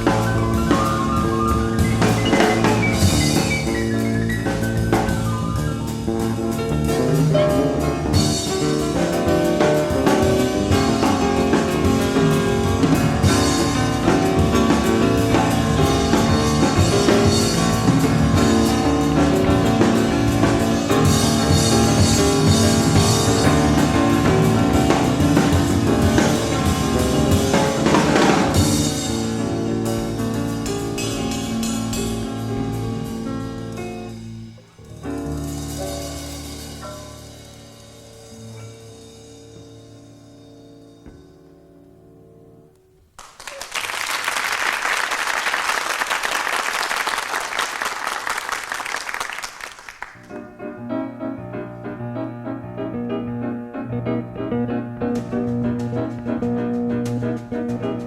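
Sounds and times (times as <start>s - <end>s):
busy drum kit: 0.0s - 40.6s, 52.8s - 58.0s
bass: 0.0s - 43.0s, 50.3s - 58.0s
piano: 0.0s - 58.0s
audience applauding: 43.2s - 50.4s.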